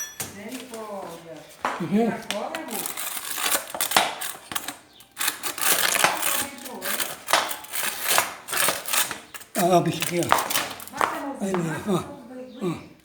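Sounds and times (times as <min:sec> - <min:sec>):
rustling: 0:00.0 - 0:11.4
small hard objects clattering: 0:01.6 - 0:11.7.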